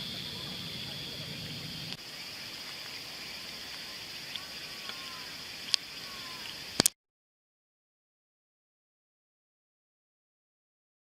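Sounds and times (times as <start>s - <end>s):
faint chirps: 0.0s - 6.8s
high-pitched insect trill: 0.0s - 6.8s
sharp clicks: 6.4s - 7.0s.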